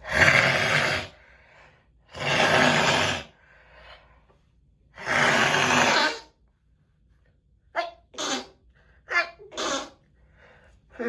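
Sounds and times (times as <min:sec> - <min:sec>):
person blowing nose: 0:02.2 - 0:03.4, 0:05.0 - 0:06.4, 0:08.2 - 0:08.6, 0:09.5 - 0:10.0.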